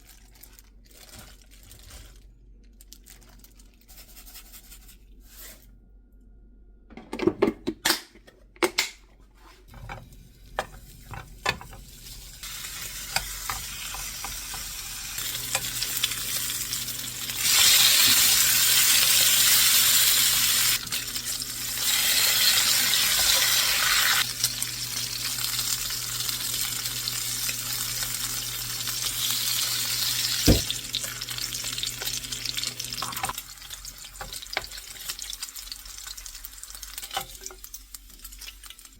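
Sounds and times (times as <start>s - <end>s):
food sizzling in a pan: 10.1s - 38.9s.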